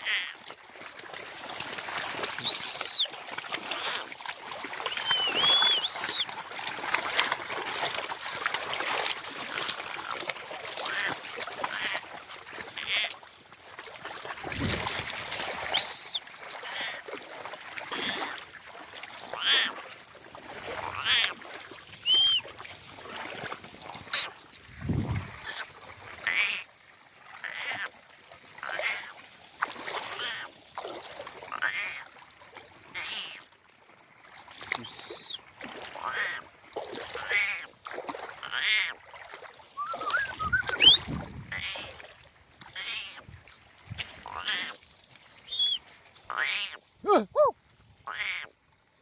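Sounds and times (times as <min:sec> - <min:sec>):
high whistled notes: 0:02.4 - 0:03.1, 0:05.0 - 0:06.2, 0:15.8 - 0:16.2, 0:22.0 - 0:22.4, 0:39.8 - 0:41.0, 0:45.5 - 0:45.8.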